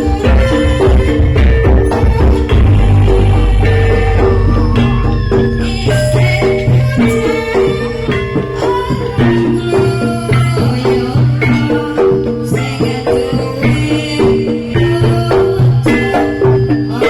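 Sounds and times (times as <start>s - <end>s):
low sustained booming tone: 0.0s - 10.0s
drum strikes: 0.0s - 11.7s
metallophone notes: 0.0s - 17.0s.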